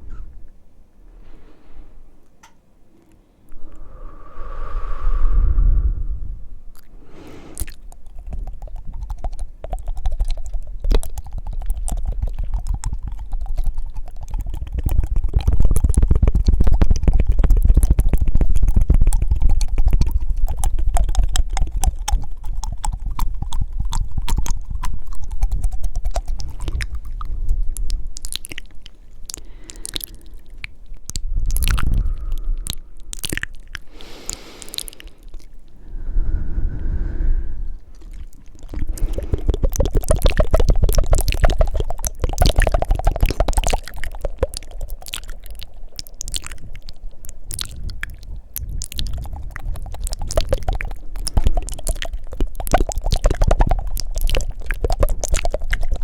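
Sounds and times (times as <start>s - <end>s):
breaths: 1.0s - 2.3s, 2.9s - 7.9s, 29.3s - 30.7s, 31.3s - 39.7s
mouth clicks: 2.2s - 56.0s
wet tongue fluttering: 3.5s - 56.0s.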